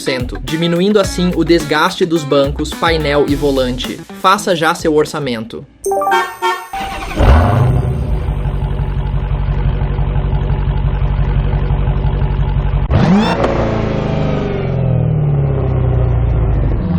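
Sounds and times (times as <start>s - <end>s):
car engine revving: 6.8s - 16.9s.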